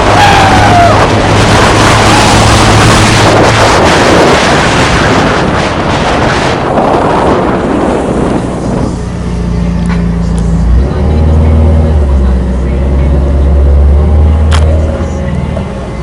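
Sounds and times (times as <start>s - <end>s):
rushing water: 0.0s - 8.6s
wind buffeting microphone: 0.0s - 15.0s
motorboat engine hum: 0.0s - 16.0s.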